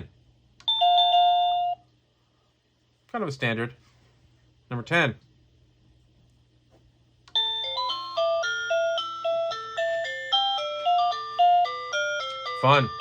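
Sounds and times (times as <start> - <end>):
doorbell chime melody: 0.7 - 1.8, 7.3 - 13.0.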